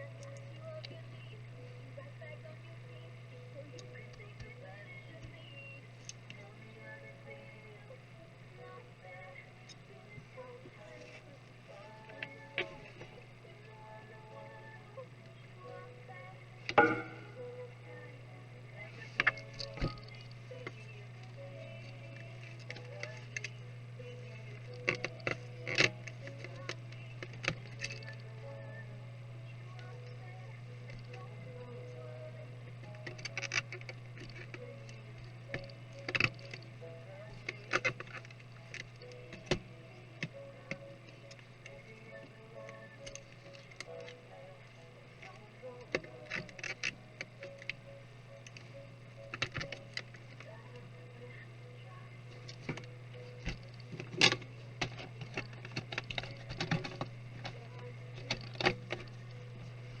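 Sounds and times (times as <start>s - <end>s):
faint background music: 0.0s - 60.0s
low hum: 0.0s - 60.0s
clicks and knocks of tools: 24.5s - 28.2s, 32.9s - 36.7s, 37.3s - 39.6s, 52.3s - 59.4s
laptop parts clicking and tapping: 52.4s - 59.3s.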